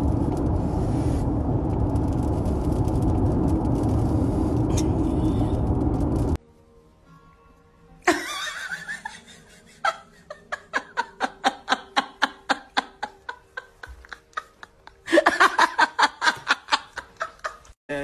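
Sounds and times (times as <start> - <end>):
person laughing: 8.1 - 17.8.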